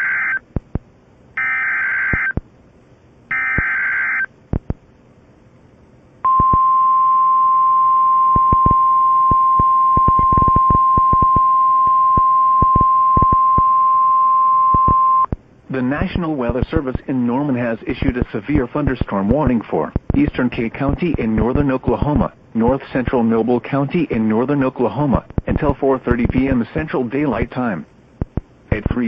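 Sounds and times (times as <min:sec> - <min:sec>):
static clicks: 0:00.0 - 0:00.9, 0:02.0 - 0:02.5, 0:04.5 - 0:04.9, 0:08.3 - 0:13.7, 0:14.7 - 0:15.5, 0:18.0 - 0:22.8, 0:25.1 - 0:26.6, 0:28.2 - 0:28.6
steady warning alarm tone: 0:01.4 - 0:02.4, 0:03.3 - 0:04.3.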